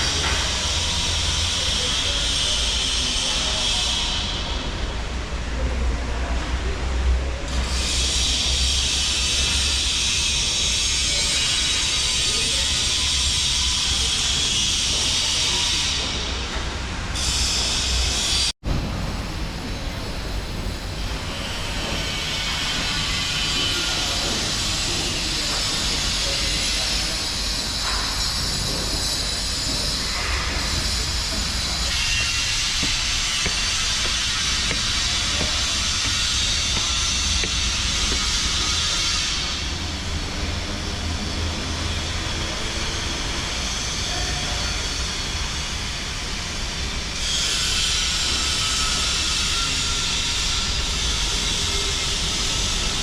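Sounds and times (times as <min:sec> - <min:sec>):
light footsteps: 0:30.2 - 0:38.6.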